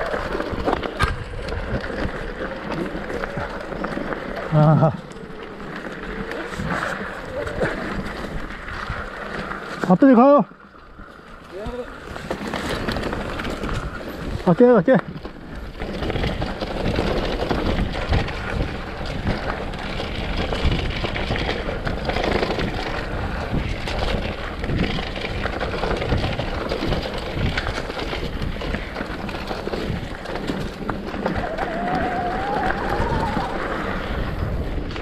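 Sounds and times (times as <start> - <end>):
bike rattling and knocking: 0.0 - 35.0
bike tyres rolling over rocks: 0.0 - 35.0
wind on microphone: 15.5 - 35.0.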